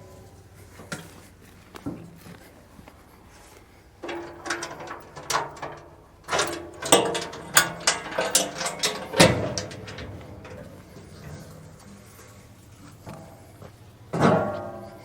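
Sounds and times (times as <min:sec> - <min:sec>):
sharp mechanical clicks and clanks: 0:04.0 - 0:11.0.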